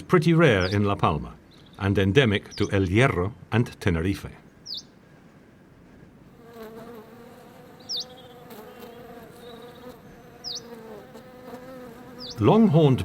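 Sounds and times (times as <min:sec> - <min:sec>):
short high bird chirp: 0:04.6 - 0:05.0, 0:07.9 - 0:09.8
bee buzzing in flight: 0:06.3 - 0:13.0.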